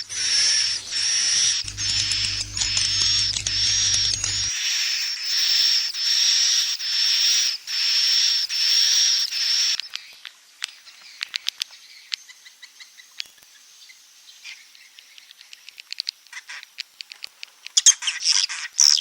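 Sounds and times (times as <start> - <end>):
buzzy hissing bird calls: 0.0 - 4.5
rapid clicks and short chirps: 0.0 - 4.5.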